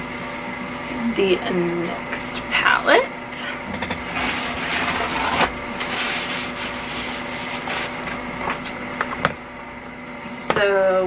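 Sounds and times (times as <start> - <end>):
rubbing on skin: 4.0 - 9.2.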